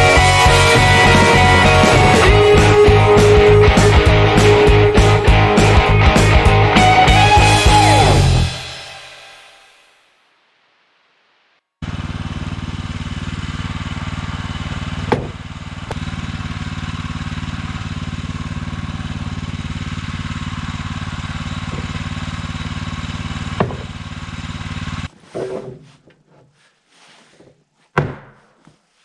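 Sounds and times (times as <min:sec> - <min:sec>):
small gasoline engine running: 0:00.0 - 0:08.6, 0:11.8 - 0:25.1.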